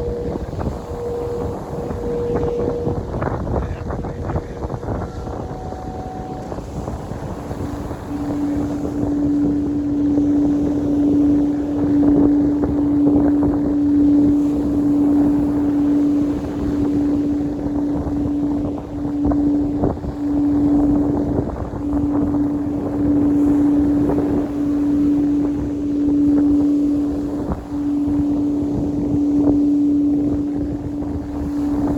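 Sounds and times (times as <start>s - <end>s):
singing bowl tone: 0.0s - 31.9s
wind buffeting microphone: 0.0s - 31.9s.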